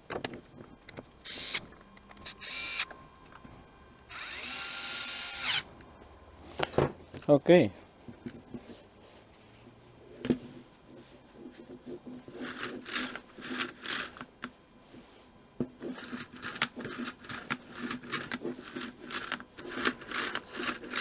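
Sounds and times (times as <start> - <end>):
plastic parts clicking and rattling: 0.0 - 3.5, 11.8 - 14.6, 15.6 - 21.0.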